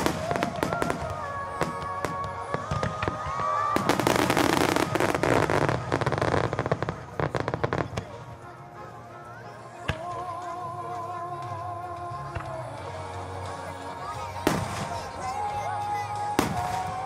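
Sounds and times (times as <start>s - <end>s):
fireworks bursting and crackling: 0.0s - 8.3s, 14.4s - 17.0s
music from loudspeakers: 0.0s - 17.0s.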